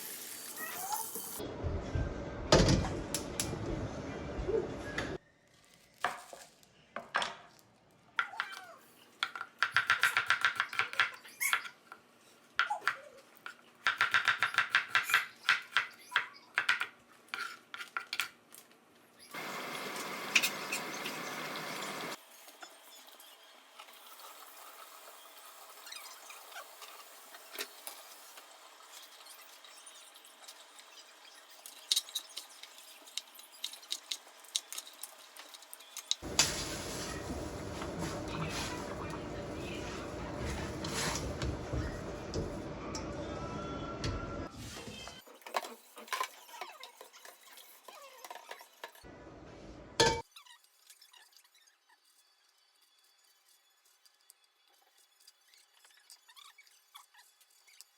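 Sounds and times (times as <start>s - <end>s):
utensils clinking on dishes: 50.0s - 50.3s.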